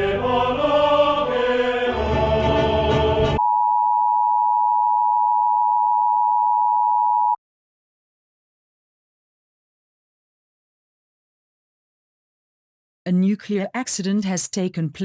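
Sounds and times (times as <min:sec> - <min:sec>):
choral music with low drone: 0:00.0 - 0:03.4
steady high beep tone: 0:03.4 - 0:07.4.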